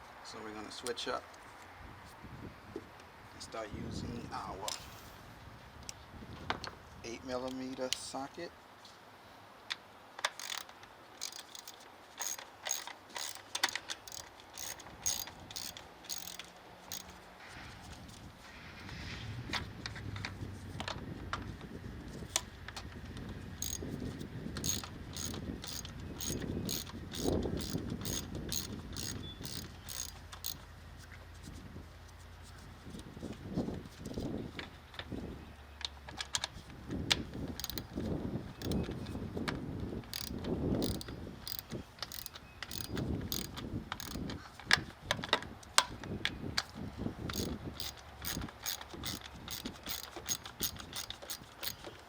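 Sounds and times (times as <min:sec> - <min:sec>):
socket ratchet clicking: 0:10.3 - 0:17.1, 0:23.6 - 0:23.8, 0:24.6 - 0:30.6, 0:37.6 - 0:37.9, 0:38.6 - 0:38.8, 0:40.1 - 0:44.2, 0:47.3 - 0:51.8.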